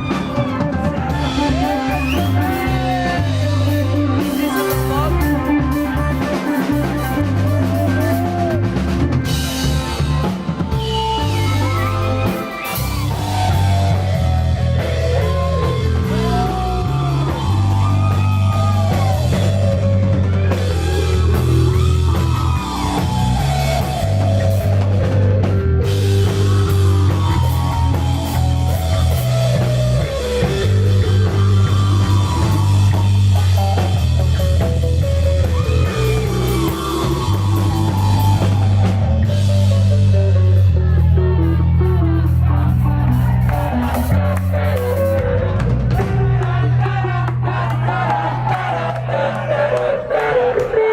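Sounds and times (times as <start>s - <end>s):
lead electric guitar: 0.0s - 47.5s
rock band playing live: 0.0s - 50.9s.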